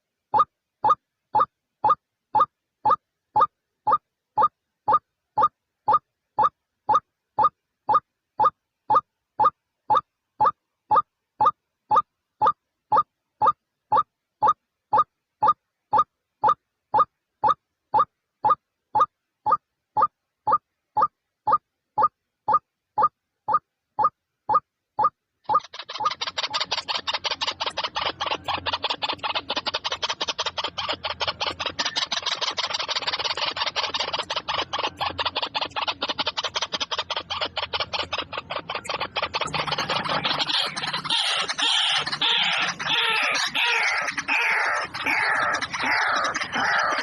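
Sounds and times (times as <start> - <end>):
flock of birds calling: 25.5 - 47.0.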